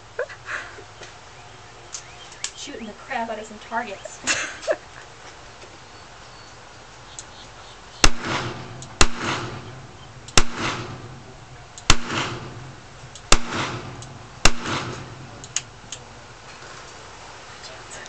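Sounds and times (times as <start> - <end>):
revolver gunshots with echo: 8.0 - 15.9.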